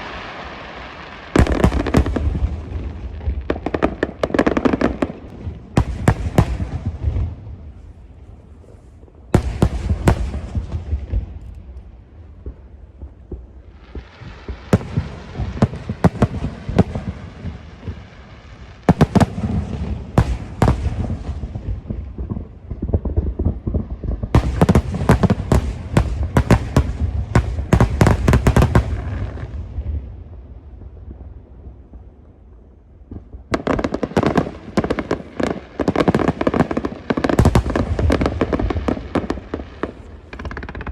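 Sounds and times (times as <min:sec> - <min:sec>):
fireworks crackling hiss: 0:00.0 - 0:30.2, 0:33.1 - 0:40.9
fireworks bursting with bangs: 0:00.0 - 0:40.9.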